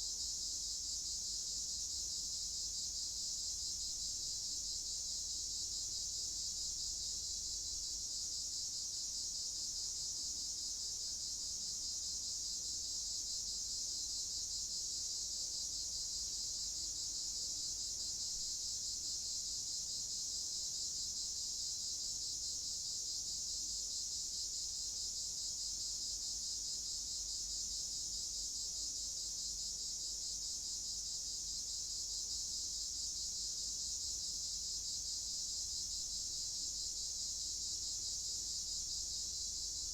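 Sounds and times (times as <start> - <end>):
crickets chirping: 24.8 - 39.9.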